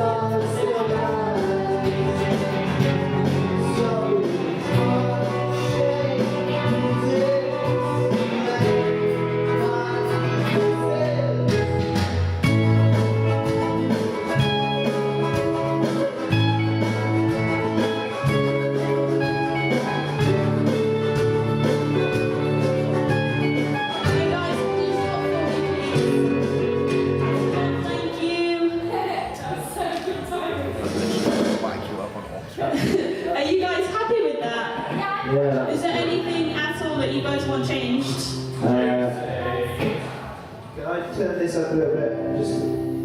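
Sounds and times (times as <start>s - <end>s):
person singing: 0.0s - 11.9s
live band playing: 0.0s - 32.9s, 33.5s - 43.0s
guitar: 0.0s - 43.0s.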